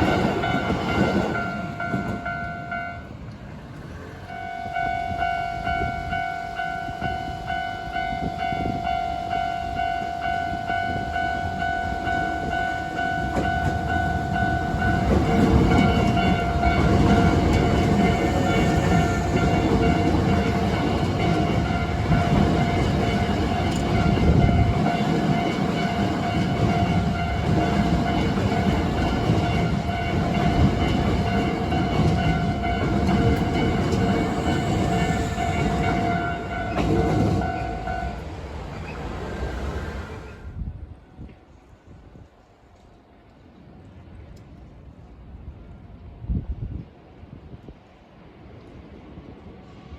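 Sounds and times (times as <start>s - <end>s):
level-crossing alarm ringing: 0.0s - 3.1s, 4.2s - 38.3s
train wheels rumbling and clattering: 0.0s - 6.2s, 10.8s - 47.9s.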